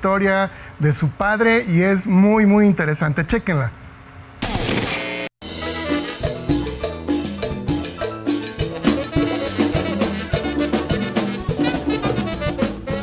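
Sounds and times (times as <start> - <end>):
upbeat instrumental music: 5.4 - 13.0.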